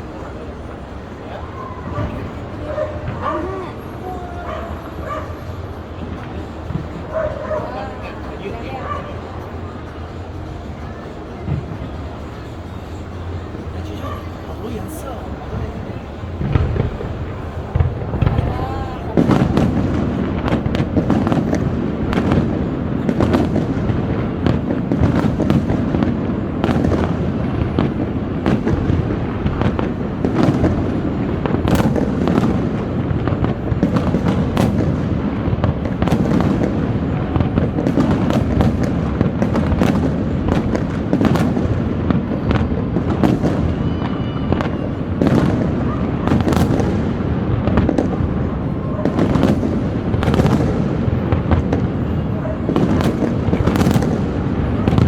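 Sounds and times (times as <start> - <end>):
fireworks bangs and crackles: 0.0 - 55.0
low booming: 14.4 - 43.9.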